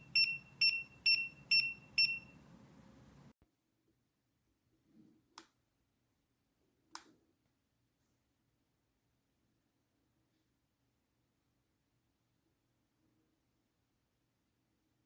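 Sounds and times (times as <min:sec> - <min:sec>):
gas detector alarm beeping: 0:00.0 - 0:02.4.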